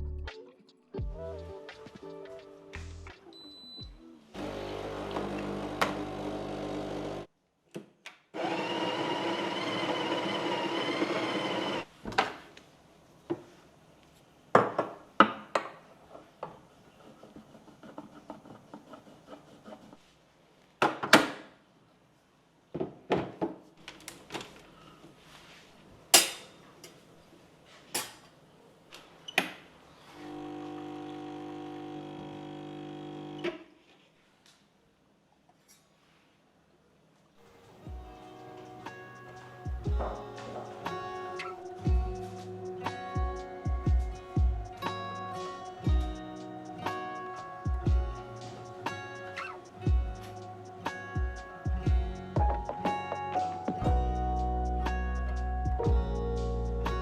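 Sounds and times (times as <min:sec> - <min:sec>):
small electric appliance motor: 0:04.4 - 0:07.3, 0:08.4 - 0:11.8, 0:30.2 - 0:33.4.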